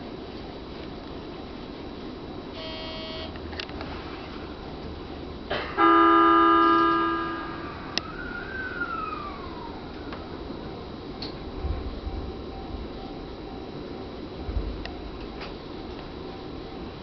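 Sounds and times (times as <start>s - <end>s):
low train hum: 0.0s - 17.0s
short beep: 2.6s - 3.3s
train horn: 2.6s - 3.3s, 5.7s - 7.8s.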